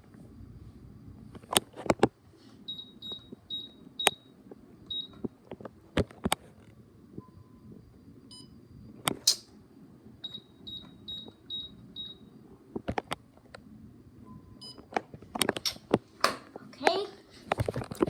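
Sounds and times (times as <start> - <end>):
keypad beeping: 2.7 - 4.3, 4.9 - 5.2, 10.2 - 12.2.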